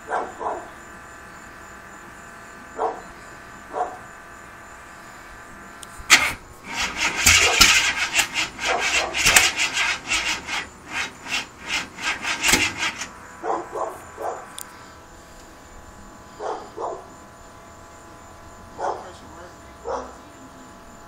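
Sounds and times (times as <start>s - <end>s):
engine cranking on starter: 6.1s - 13.2s.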